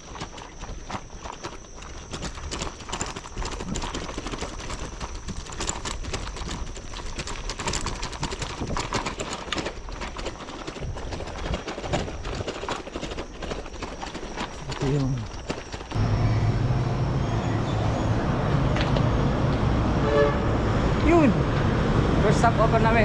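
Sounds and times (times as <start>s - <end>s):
bicycle clicks and clacks: 0.0s - 16.0s.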